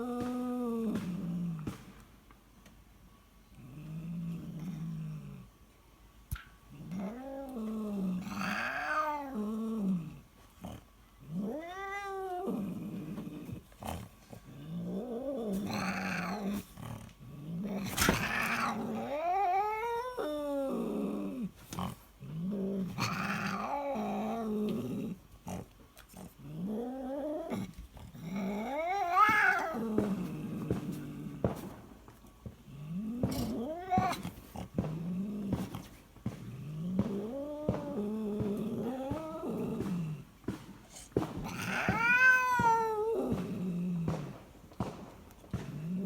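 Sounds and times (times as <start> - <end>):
cat snoring: 12.4 - 19.6, 20.7 - 31.7, 32.7 - 45.0.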